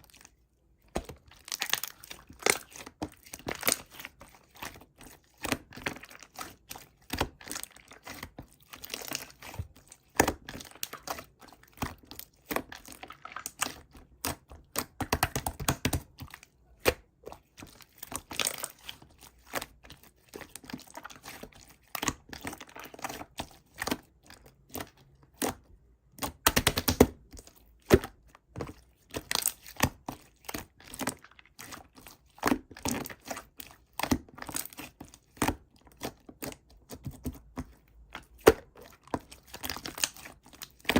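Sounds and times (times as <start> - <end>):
slime clicking and popping: 26.2 - 27.2.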